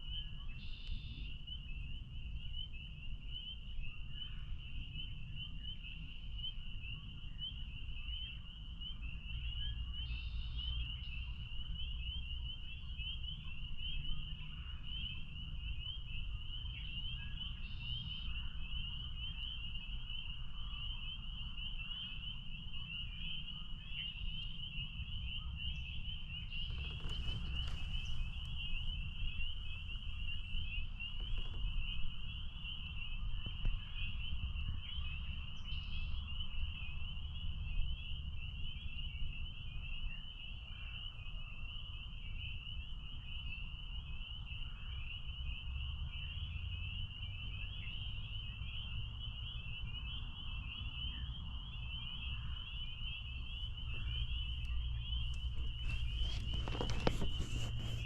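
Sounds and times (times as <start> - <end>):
frogs peeping chorus: 0.0 - 58.0
steady low rumble: 26.4 - 35.8.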